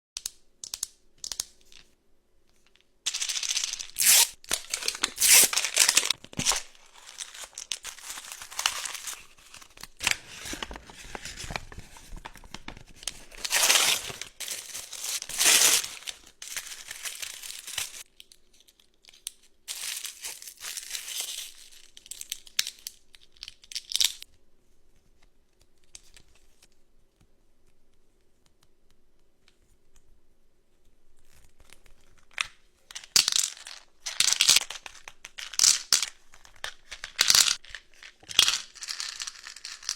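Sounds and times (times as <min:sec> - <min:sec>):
packaging tearing and rustling: 0:03.1 - 0:18.1, 0:19.7 - 0:21.8.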